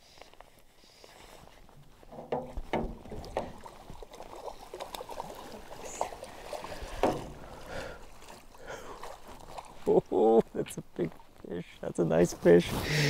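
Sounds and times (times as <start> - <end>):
water splashing against a boat: 1.3 - 11.6.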